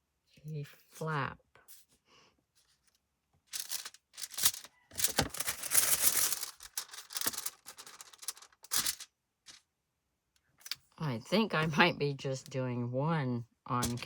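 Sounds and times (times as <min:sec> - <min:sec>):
envelope rustling and scraping: 0:03.5 - 0:09.6.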